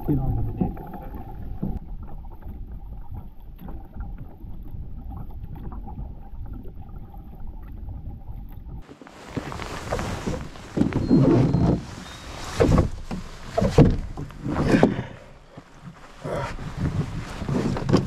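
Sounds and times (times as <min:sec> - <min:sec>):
paddle splashes and knocks: 0:08.7 - 0:18.0
rain and wind rumble: 0:08.8 - 0:18.0.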